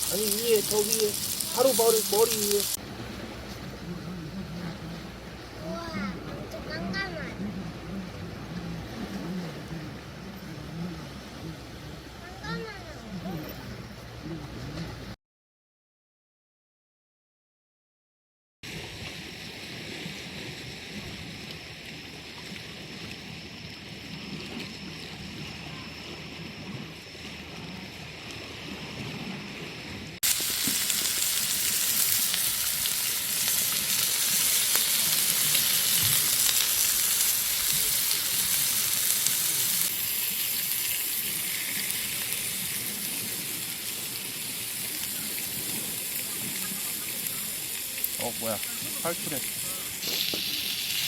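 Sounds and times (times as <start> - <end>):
meat sizzling in a pan: 0.0 - 2.8, 30.2 - 51.0.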